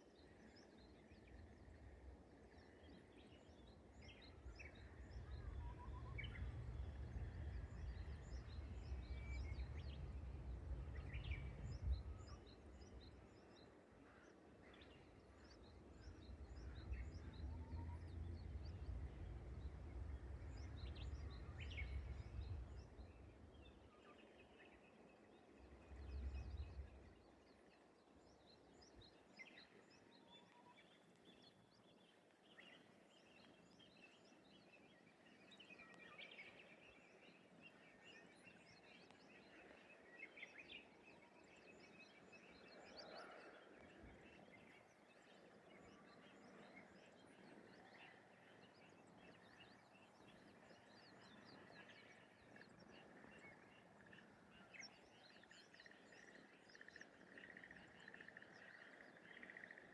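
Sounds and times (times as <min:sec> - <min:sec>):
small birds chirping: 0:00.0 - 0:59.9
low rumble: 0:04.4 - 0:13.2, 0:15.4 - 0:23.8, 0:25.7 - 0:27.2.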